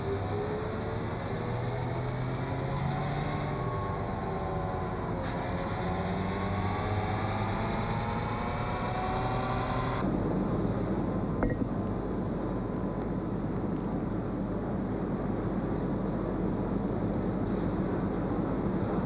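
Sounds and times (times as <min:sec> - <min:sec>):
car engine accelerating with whine: 0:00.0 - 0:11.6.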